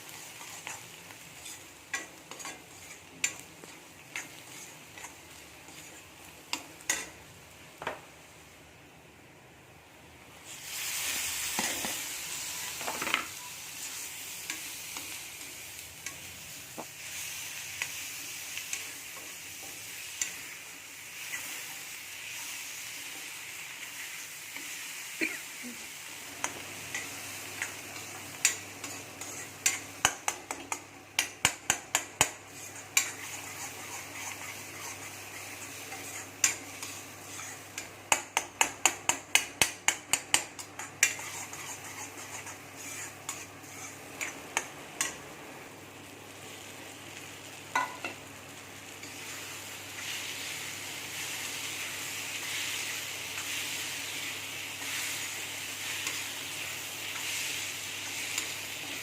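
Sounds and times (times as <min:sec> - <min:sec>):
food sizzling in a pan: 0:00.0 - 0:59.0
spatula knocking and scraping pan: 0:47.7 - 0:48.2.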